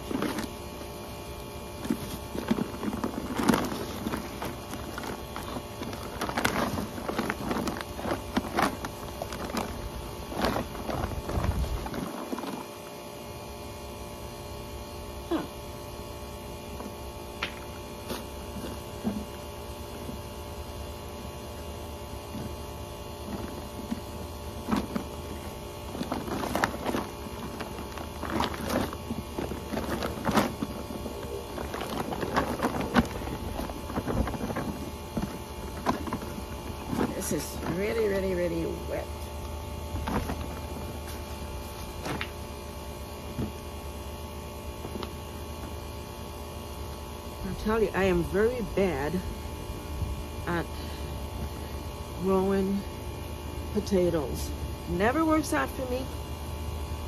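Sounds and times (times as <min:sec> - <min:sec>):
hands rummaging through wet soil: 0:00.0 - 0:12.9, 0:16.8 - 0:43.8
faint steady hum: 0:00.0 - 0:57.0.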